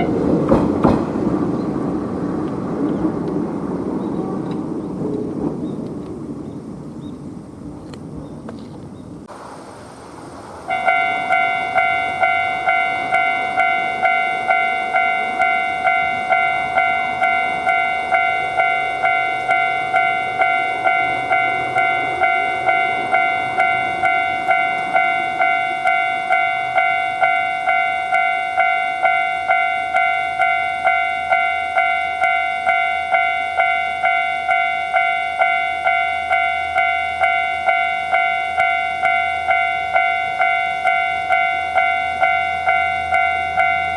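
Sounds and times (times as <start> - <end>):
crossing warning bell ringing: 0.0 - 1.3, 10.7 - 43.9
train passing: 0.0 - 43.9.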